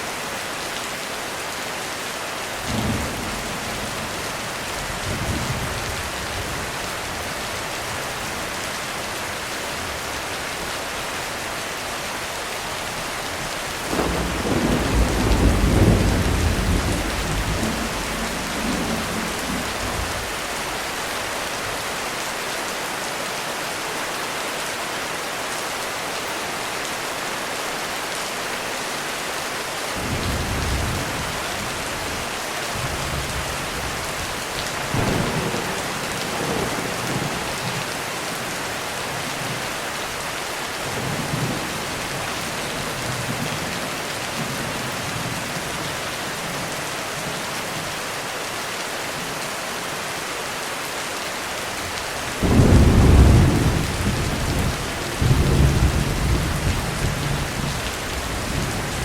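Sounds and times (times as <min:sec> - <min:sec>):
heavy rain falling: 0:00.0 - 0:59.0
thunder rumbling: 0:13.9 - 0:20.9, 0:30.0 - 0:38.0, 0:52.4 - 0:59.0.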